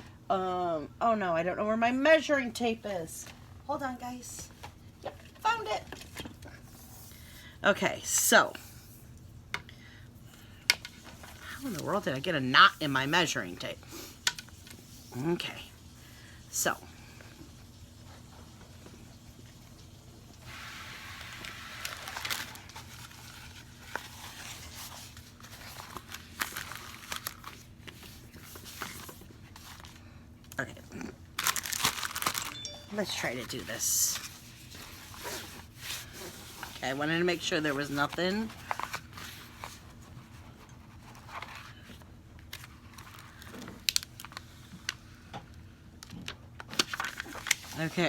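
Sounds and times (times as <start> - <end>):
plastic packaging crinkling: 21.2 - 30.0, 31.3 - 36.8, 42.4 - 45.0, 46.6 - 48.0.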